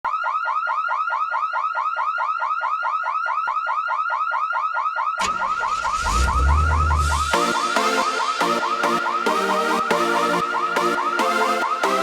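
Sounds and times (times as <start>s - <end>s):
music with bass line: 5.3s - 8.9s.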